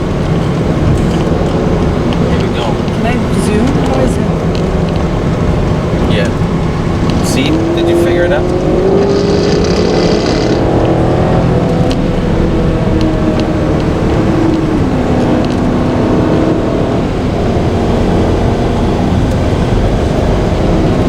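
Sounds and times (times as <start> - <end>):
car engine and road noise: 0.0 - 21.0.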